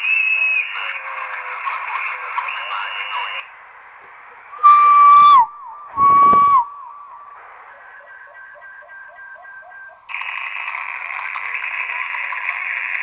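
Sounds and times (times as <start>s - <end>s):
short whistling radio tones: 0.0s - 3.5s, 4.5s - 9.9s
radio band hiss: 0.0s - 4.6s, 7.3s - 8.6s, 10.1s - 13.0s
faint chirping signals: 5.5s - 10.1s.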